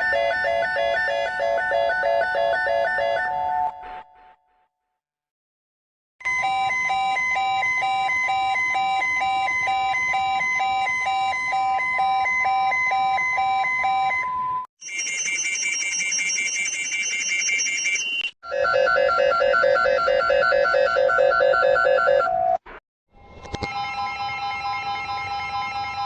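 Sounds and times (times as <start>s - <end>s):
emergency alert alarm tone: 6.2s - 22.6s, 23.6s - 26.0s.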